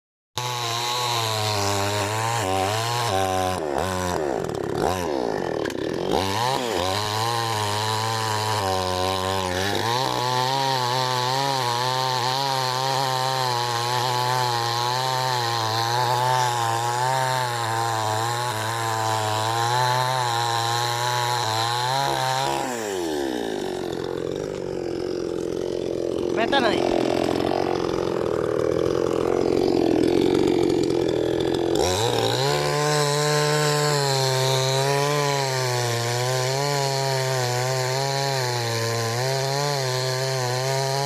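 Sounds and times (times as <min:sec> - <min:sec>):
chainsaw cutting a tree: 0:00.4 - 0:41.0.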